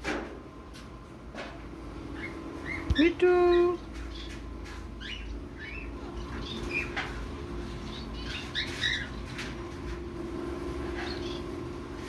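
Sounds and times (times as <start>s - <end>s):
parrot chirping: 2.1s - 4.3s, 5.0s - 7.0s, 7.7s - 9.2s.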